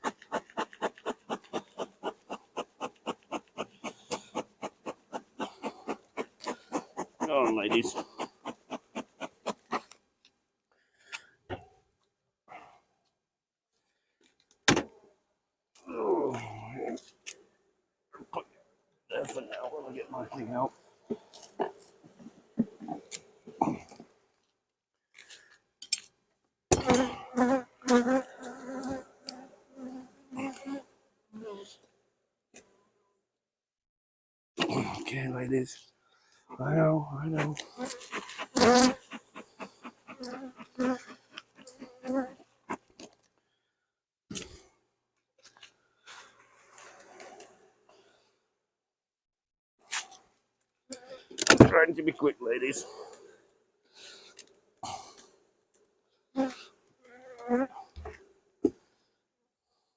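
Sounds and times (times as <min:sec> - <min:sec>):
honey bees buzzing: 0:00.0 - 0:09.8, 0:37.7 - 0:42.4
quick rubbing brush strokes: 0:00.0 - 0:09.8, 0:37.4 - 0:42.1.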